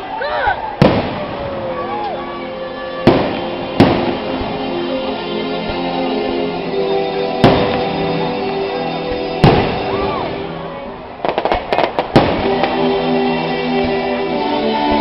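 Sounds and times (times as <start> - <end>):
firework crackling pops: 0.8 - 1.8, 3.1 - 4.6, 11.2 - 13.0
firework booms: 0.8 - 1.9, 3.0 - 4.7, 7.4 - 8.0, 9.4 - 10.4, 11.2 - 13.0
music playing: 1.4 - 15.0.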